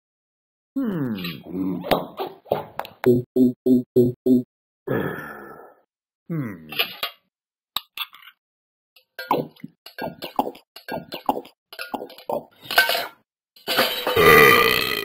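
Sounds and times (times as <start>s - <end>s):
dog burp: 14.2s - 15.0s.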